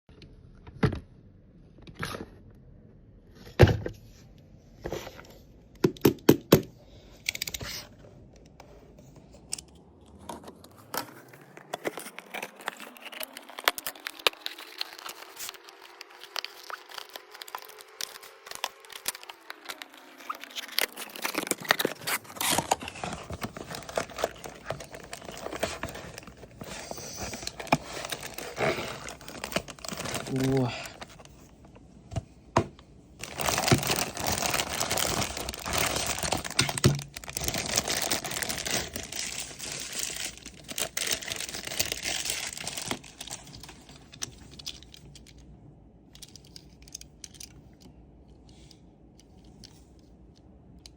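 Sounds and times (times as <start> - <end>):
card and plastic tearing and crinkling: 10.2 - 45.4.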